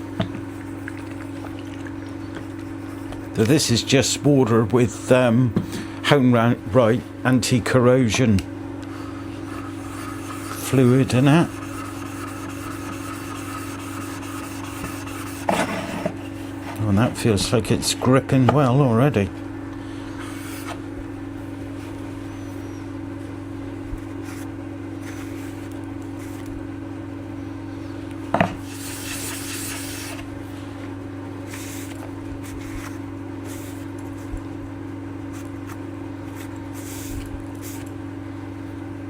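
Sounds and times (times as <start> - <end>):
steady low hum: 0.0 - 39.0
plane scraping on wet abrasive: 9.4 - 15.8.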